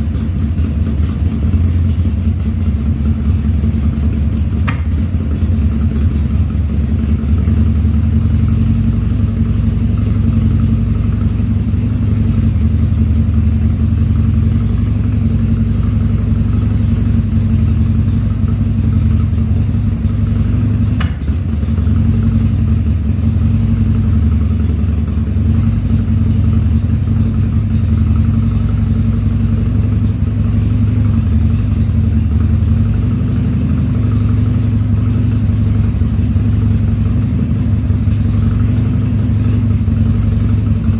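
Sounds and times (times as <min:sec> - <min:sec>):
motorcycle engine idling: 0:00.0 - 0:40.9
engine click: 0:04.1 - 0:07.2, 0:20.9 - 0:21.8.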